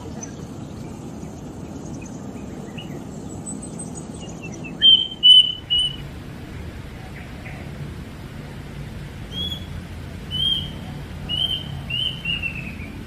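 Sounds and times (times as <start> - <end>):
faint high twittering: 0.0 - 13.0
bird whistled notes: 4.3 - 6.0, 9.3 - 9.7, 10.3 - 13.0.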